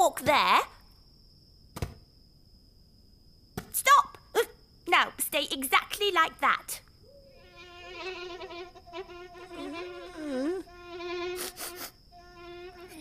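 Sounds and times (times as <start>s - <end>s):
buzzy nasal hum: 7.1s - 13.0s.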